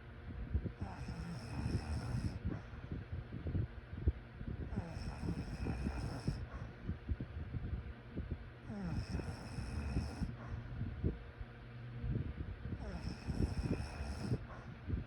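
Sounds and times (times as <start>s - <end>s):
person snoring: 0.8s - 2.4s, 4.7s - 6.5s, 8.7s - 10.3s, 12.8s - 14.5s.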